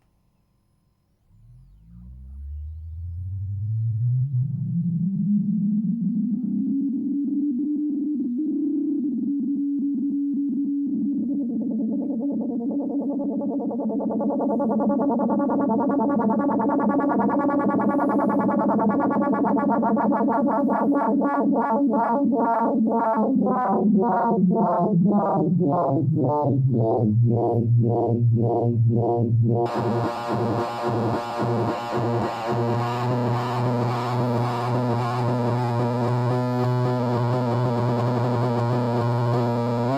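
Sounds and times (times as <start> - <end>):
buzzy electronic drone: 14.1 - 39.9.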